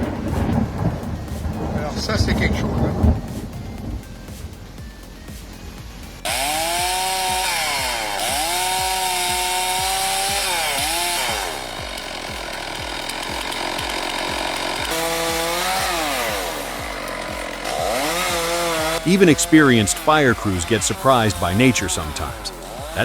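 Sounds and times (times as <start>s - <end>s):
chainsaw running at high revs: 5.3s - 23.0s.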